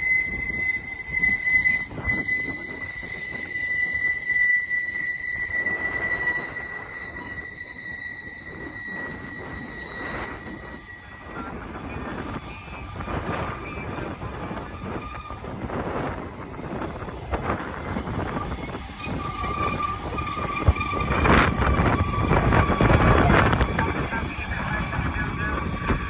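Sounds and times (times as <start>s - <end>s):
rolling rumble of train cars: 0.0s - 26.0s
train wheels squealing: 0.0s - 26.0s.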